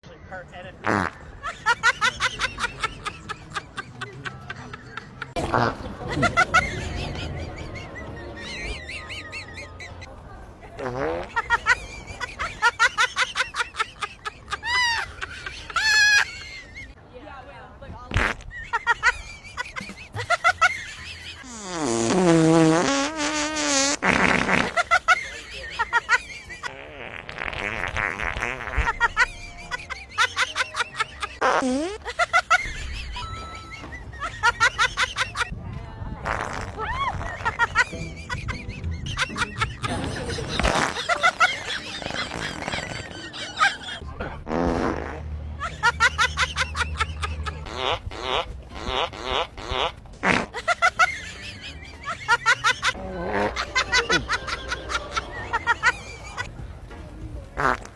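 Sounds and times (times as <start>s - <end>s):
farts: 0.8s - 1.2s, 10.8s - 11.4s, 18.1s - 18.4s, 21.4s - 24.8s, 26.7s - 29.0s, 31.4s - 32.0s, 36.2s - 37.5s, 40.5s - 43.2s, 44.4s - 45.3s, 47.6s - 50.6s, 57.6s - 57.9s.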